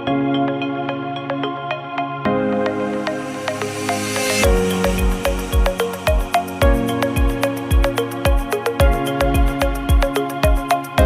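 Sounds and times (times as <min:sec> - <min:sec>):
electronic music with kick drum: 0:00.0 - 0:11.0.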